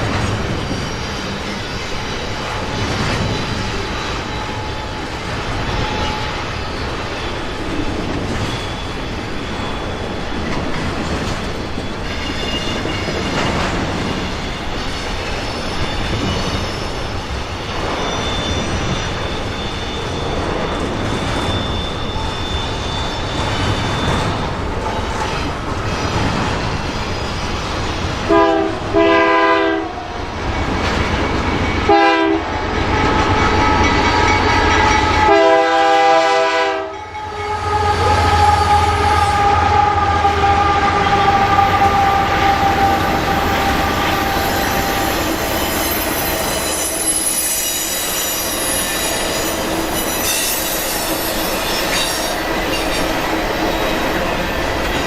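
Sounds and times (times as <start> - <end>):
clickety-clack of rolling cars: 0.0 - 22.4, 23.3 - 29.6
wheel squeal: 0.0 - 28.2, 40.3 - 55.0
train rumble: 0.0 - 55.0
locomotive horn blasts: 28.3 - 30.1, 31.9 - 32.5, 35.1 - 45.2.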